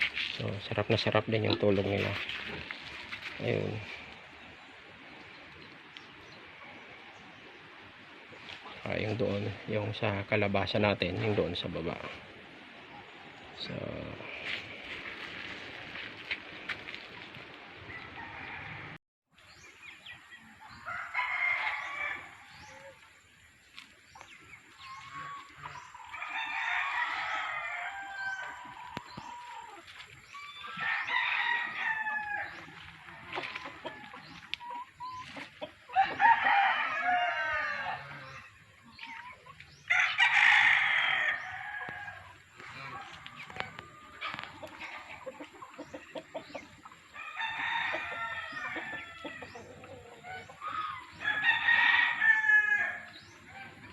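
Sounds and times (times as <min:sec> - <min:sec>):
roosters crowing: 0:17.8 - 0:19.0, 0:20.4 - 0:23.1, 0:24.7 - 0:39.1, 0:39.8 - 0:53.9
chickens clucking: 0:20.1 - 0:40.2, 0:41.2 - 0:51.6.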